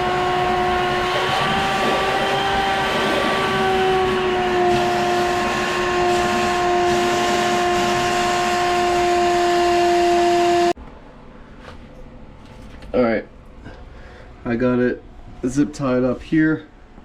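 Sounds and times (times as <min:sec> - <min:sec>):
vacuum motor whining: 0:00.0 - 0:10.8.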